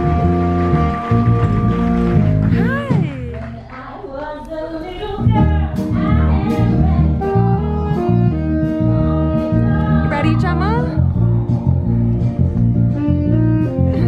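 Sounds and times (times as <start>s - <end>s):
steady bass notes: 0.0s - 3.7s, 5.0s - 14.0s
person singing: 2.5s - 8.1s.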